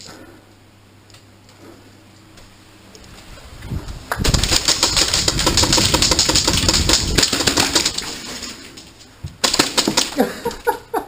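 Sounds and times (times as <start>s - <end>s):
airsoft guns firing full auto: 4.2s - 8.2s, 9.4s - 10.2s.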